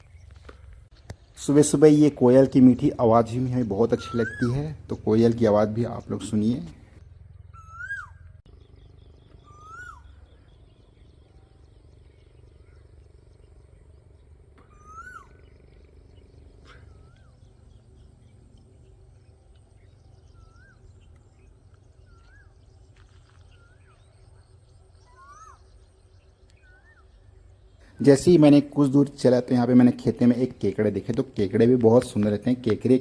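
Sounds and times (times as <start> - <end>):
faint low rumble: 0.0 - 33.0
bird whistled calls: 2.8 - 6.9, 7.5 - 8.3, 9.0 - 13.0, 14.6 - 17.8, 19.8 - 28.8.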